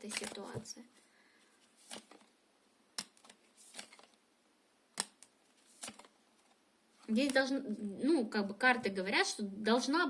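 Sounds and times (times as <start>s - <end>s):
cards tapping and rustling: 0.0s - 0.8s, 1.7s - 2.3s, 2.9s - 4.2s, 5.0s - 7.4s.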